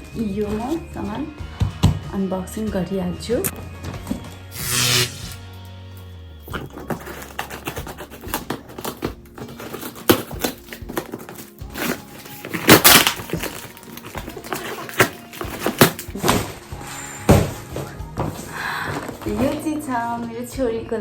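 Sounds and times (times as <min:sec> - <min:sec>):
background music: 0:00.0 - 0:21.0
plastic and paper crinkling: 0:06.6 - 0:19.7.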